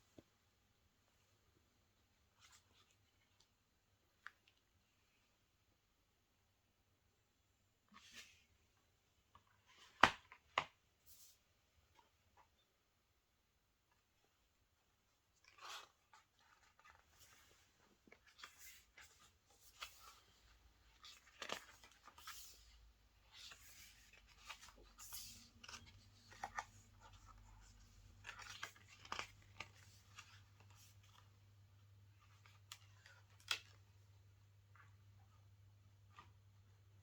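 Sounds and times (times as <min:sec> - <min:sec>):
crisp clicks of paper and plastic: 0:15.3 - 0:31.4, 0:32.2 - 0:33.9.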